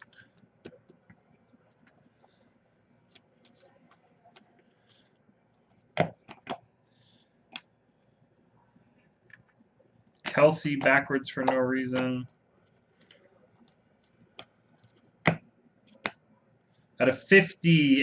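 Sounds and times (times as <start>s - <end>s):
trading cards handled on table: 3.0s - 6.7s, 10.2s - 16.2s.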